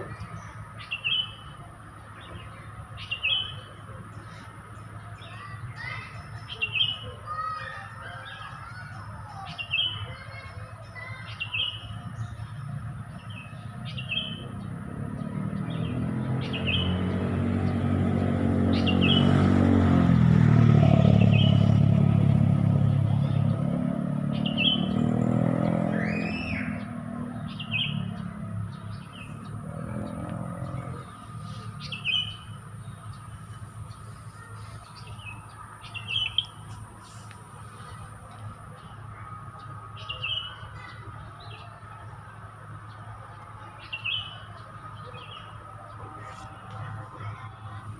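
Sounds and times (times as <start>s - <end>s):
bird chirps: 0.0s - 17.8s, 24.3s - 42.1s, 42.8s - 47.8s
vehicle engine rumble passing: 0.0s - 47.9s
bulbul calling: 30.1s - 37.3s.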